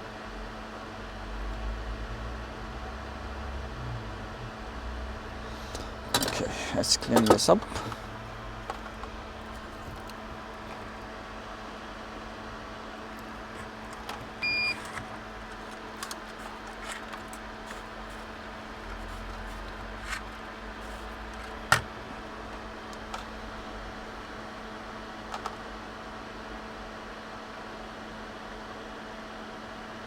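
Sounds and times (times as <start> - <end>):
hot-air station fan hum: 0.0 - 30.0
short electronic beep: 14.4 - 14.8.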